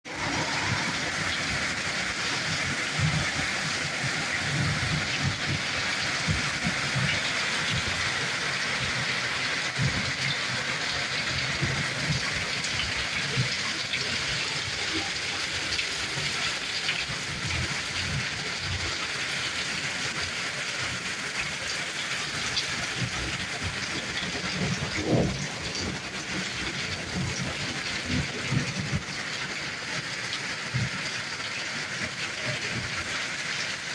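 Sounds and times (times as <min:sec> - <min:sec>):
heavy rain hissing: 0:00.1 - 0:33.9.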